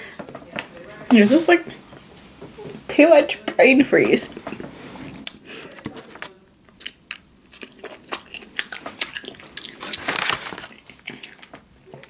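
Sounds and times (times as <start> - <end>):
breathy noise: 0.0 - 1.0
chewing with wet clicks: 6.5 - 12.0.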